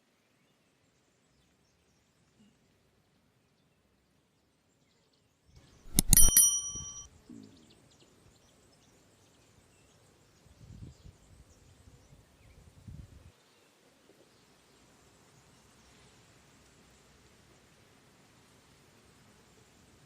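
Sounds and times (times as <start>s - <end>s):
sharp ringing metallic strike: 5.9s - 7.1s.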